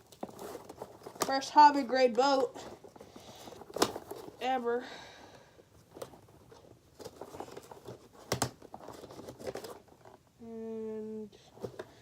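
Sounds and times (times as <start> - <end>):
packaging crinkling: 0.0 - 1.6, 2.6 - 4.4, 5.8 - 10.3.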